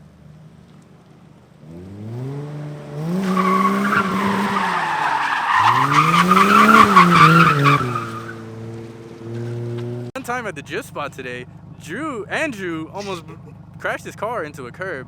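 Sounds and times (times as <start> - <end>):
car engine revving: 1.6 - 10.1
tyres squealing: 3.1 - 8.4.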